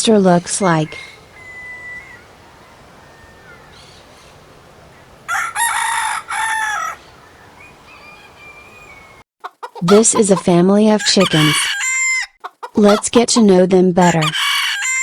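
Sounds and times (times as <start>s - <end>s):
faint steady hiss: 0.3s - 5.3s
rooster crowing: 0.9s - 9.2s, 11.0s - 12.3s, 14.2s - 15.0s.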